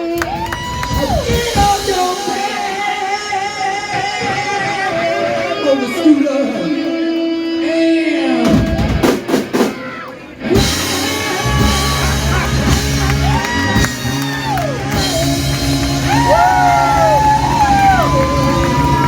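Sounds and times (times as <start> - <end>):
electric guitar: 0.0 - 19.0
drum hits: 10.6 - 19.0.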